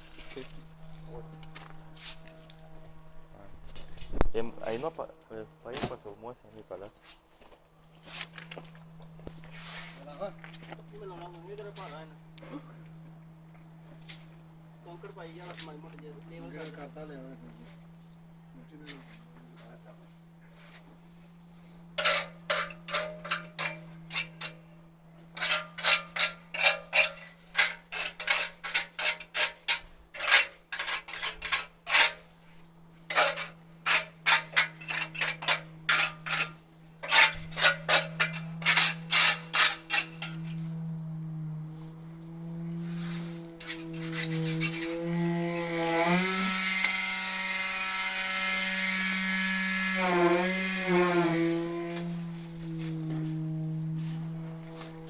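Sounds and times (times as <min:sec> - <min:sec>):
engine hum: 0:00.0 - 0:04.3, 0:07.7 - 0:55.0
hand tool scraping concrete: 0:09.4 - 0:10.3, 0:22.0 - 0:24.7, 0:25.3 - 0:40.6, 0:42.8 - 0:52.9.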